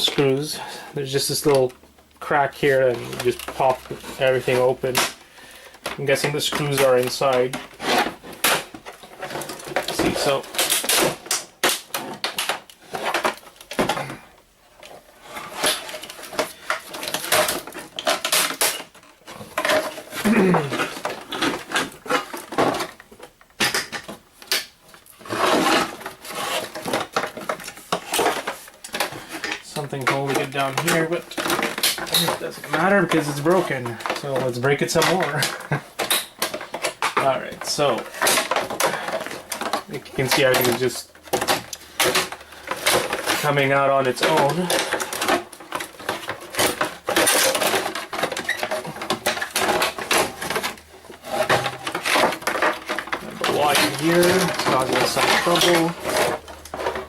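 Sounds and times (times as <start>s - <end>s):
monitor parts clattering and rattling: 0.0s - 57.0s
plastic casing scraping and creaking: 0.0s - 57.0s
plastic snapping: 7.5s - 14.0s, 15.6s - 37.3s.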